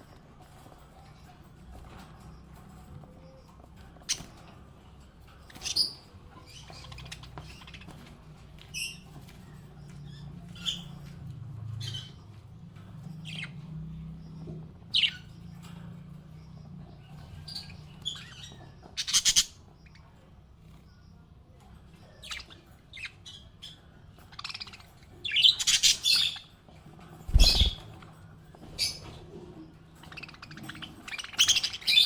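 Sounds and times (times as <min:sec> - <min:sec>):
budgerigar chirping: 0:27.3 - 0:27.8.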